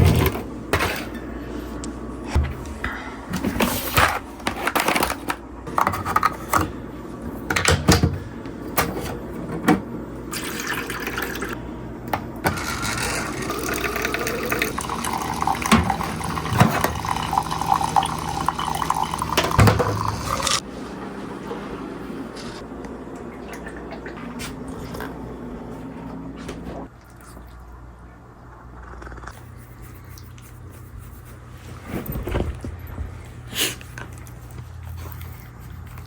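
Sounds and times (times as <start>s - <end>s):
tap water filling a container: 12.5s - 20.6s.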